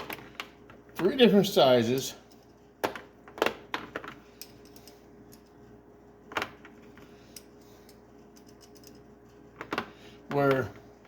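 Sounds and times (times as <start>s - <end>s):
metal tools clicking together: 4.4s - 5.6s, 7.3s - 9.1s.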